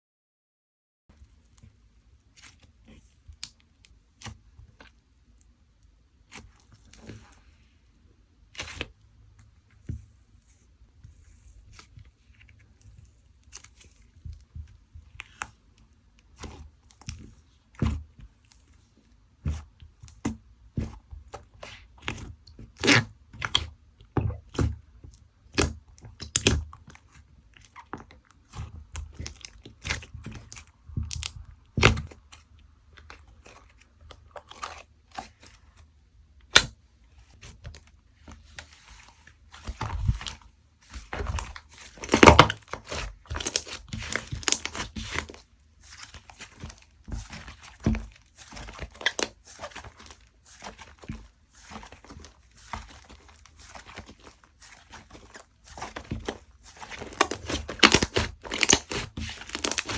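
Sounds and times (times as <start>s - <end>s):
sticky slime pops and crackles: 19.6s - 24.8s, 25.4s - 26.9s, 27.6s - 32.2s, 36.4s - 36.8s, 41.1s - 45.4s, 55.9s - 59.9s.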